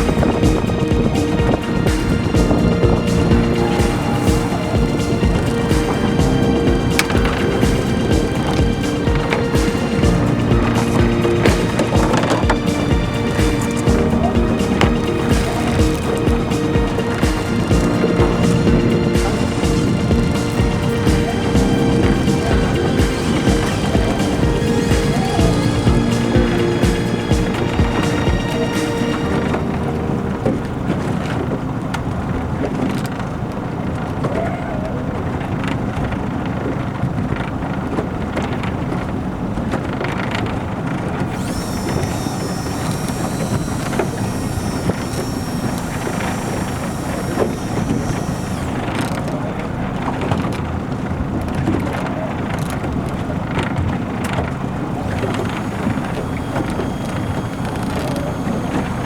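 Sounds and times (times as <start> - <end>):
high hiss: 0.0 - 31.1, 41.3 - 49.3, 55.0 - 59.0
boat engine running: 0.0 - 59.0
wind buffeting microphone: 0.0 - 59.0.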